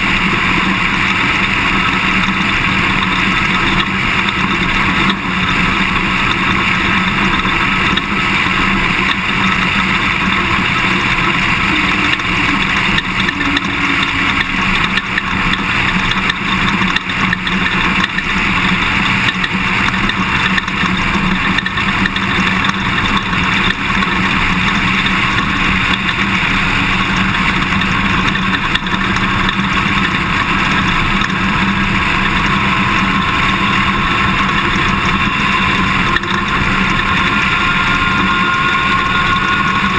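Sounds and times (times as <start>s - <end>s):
vehicle engine and tyre noise: 0.0s - 39.9s.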